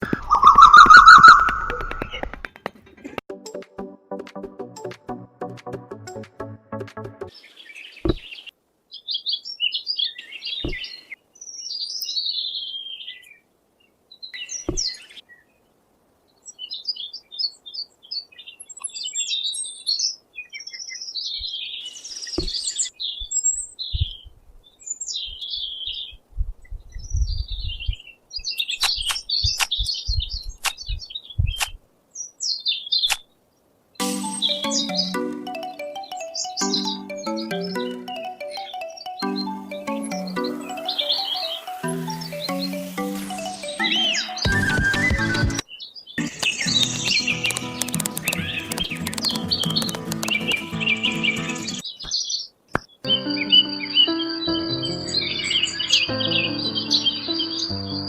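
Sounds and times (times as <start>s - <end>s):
small birds chirping: 0.0s - 3.2s, 7.3s - 58.0s
sharp clicks and knocks: 46.4s - 50.7s.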